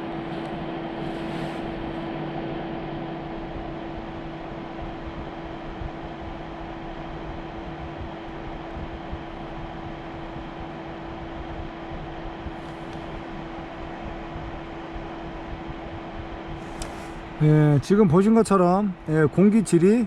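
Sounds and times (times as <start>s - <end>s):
air purifier fan running: 0.0s - 20.0s.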